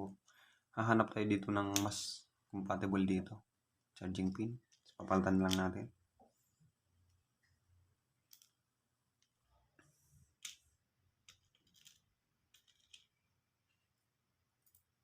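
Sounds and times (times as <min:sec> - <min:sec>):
small parts clicking and tapping: 0:04.6 - 0:05.7, 0:08.2 - 0:09.4, 0:10.4 - 0:13.2, 0:14.6 - 0:14.9.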